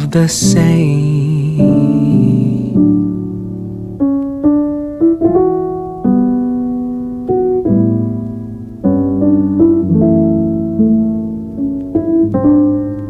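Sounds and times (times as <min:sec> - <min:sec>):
person singing: 0:00.0 - 0:03.0
piano chords: 0:00.0 - 0:13.0.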